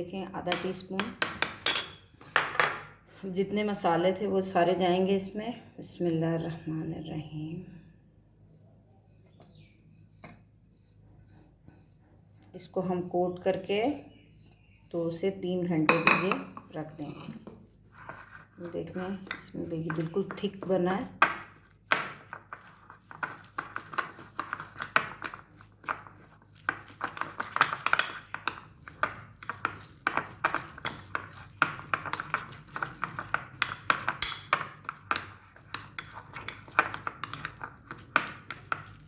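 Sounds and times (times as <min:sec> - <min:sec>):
spoon scraping and clinking in bowl: 0:01.6 - 0:02.1, 0:15.9 - 0:39.0.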